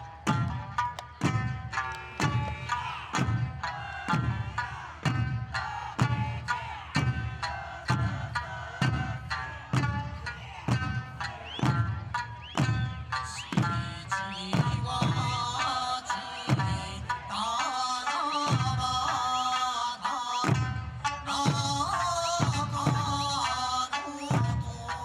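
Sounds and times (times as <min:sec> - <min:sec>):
low drum beat: 0:00.0 - 0:15.8.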